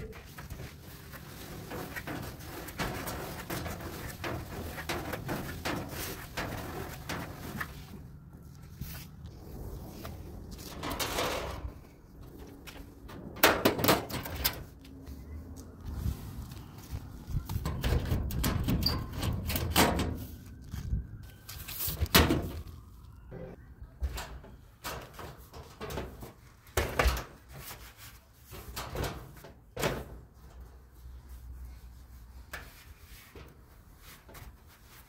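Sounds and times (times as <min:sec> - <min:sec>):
sheet-metal panels knocking and scraping: 0:01.3 - 0:07.6, 0:10.7 - 0:11.8, 0:13.0 - 0:14.7, 0:17.6 - 0:20.2.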